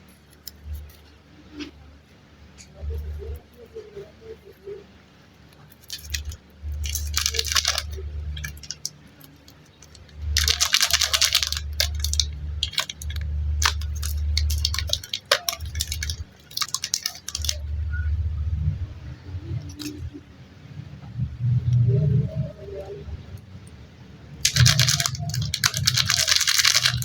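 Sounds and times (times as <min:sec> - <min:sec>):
low rumble of handling: 0:00.0 - 0:27.0
plastic packaging crinkling: 0:05.7 - 0:17.7, 0:19.5 - 0:20.1, 0:24.4 - 0:27.0.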